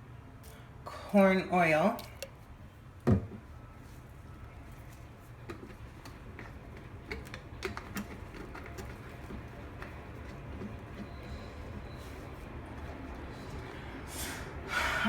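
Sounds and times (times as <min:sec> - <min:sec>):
utensils clicking and tapping: 0:05.5 - 0:11.9.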